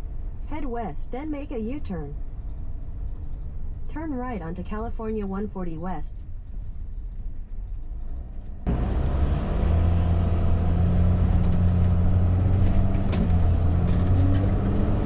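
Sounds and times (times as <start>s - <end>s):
road noise: 2.1s - 4.1s, 6.3s - 15.0s
vehicle engine running: 8.0s - 15.0s.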